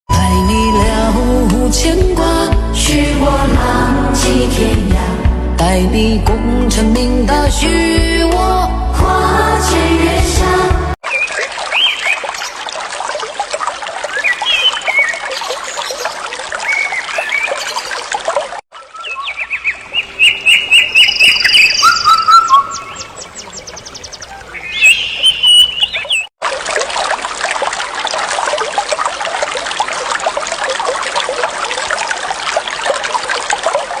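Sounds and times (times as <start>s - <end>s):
birds chirping: 11.1s - 12.6s, 14.1s - 18.1s, 18.8s - 26.3s.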